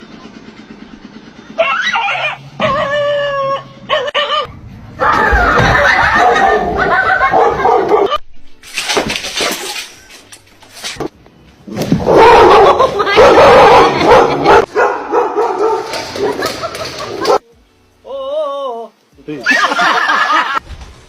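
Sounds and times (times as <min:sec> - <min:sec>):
dog wavering cry: 0:01.6 - 0:04.5.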